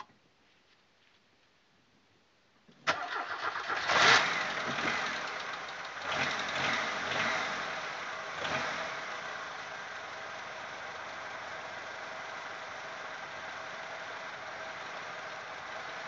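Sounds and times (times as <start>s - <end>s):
car engine revving and idling: 3.6s - 16.0s.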